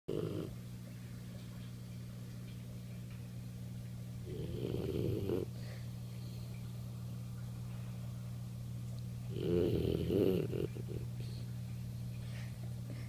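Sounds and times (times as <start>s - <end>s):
puppy snoring: 0.1s - 0.6s, 4.2s - 5.7s, 9.3s - 11.3s
steady low hum: 0.1s - 13.0s.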